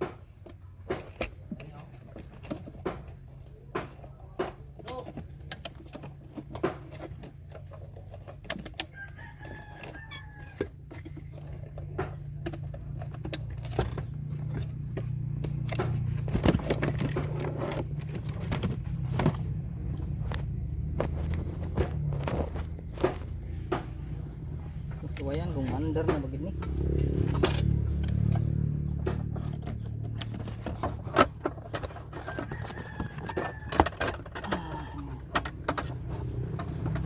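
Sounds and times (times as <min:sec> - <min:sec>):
rooster crowing: 0:08.8 - 0:10.7, 0:32.1 - 0:35.0
sharp clicks and knocks: 0:10.5 - 0:37.0.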